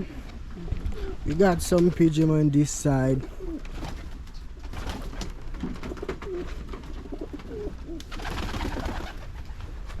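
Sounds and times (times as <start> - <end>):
pigeons cooing: 3.2 - 4.2, 5.8 - 10.0.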